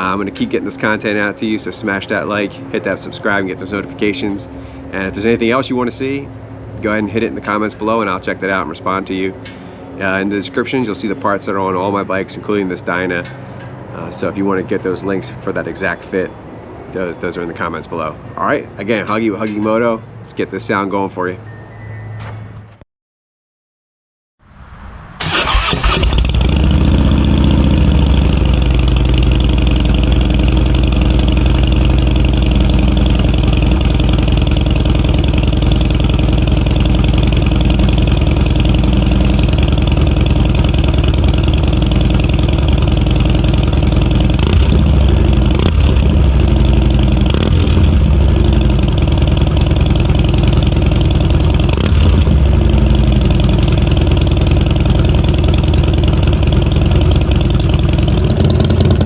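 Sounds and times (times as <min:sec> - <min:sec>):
motorcycle engine starting and idling: 0:25.2 - 0:59.0
motorcycle throttle blips: 0:25.2 - 0:59.0.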